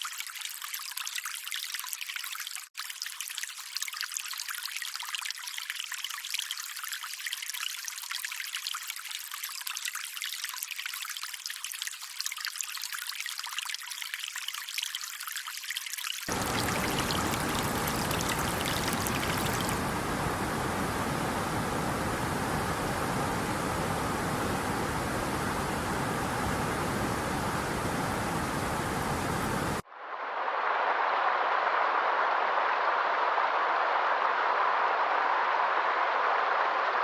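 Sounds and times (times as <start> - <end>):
water trickling and splashing: 0.0 - 29.8
deep steady water rushing: 16.3 - 29.8.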